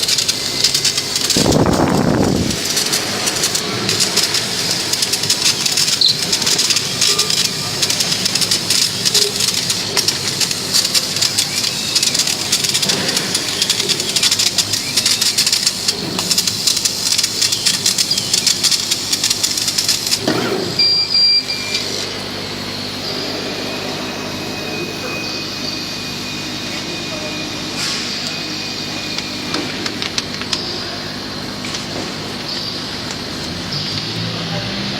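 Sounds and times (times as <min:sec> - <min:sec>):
laser cutting crackling hiss: 0:00.0 - 0:23.7, 0:24.4 - 0:34.4
faint high whine: 0:00.0 - 0:34.7
machine hum: 0:00.0 - 0:34.9.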